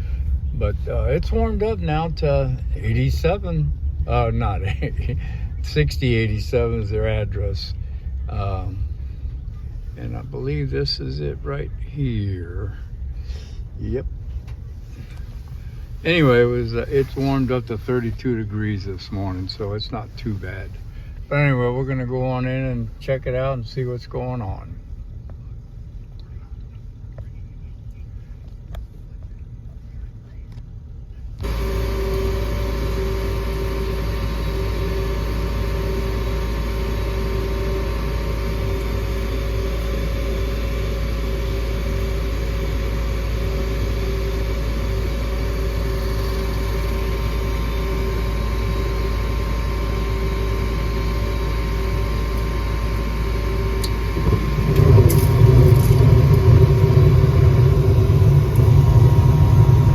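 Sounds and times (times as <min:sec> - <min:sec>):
loud low rumble: 0:00.0 - 0:17.1, 0:31.4 - 0:59.9
furnace humming: 0:00.0 - 0:59.9.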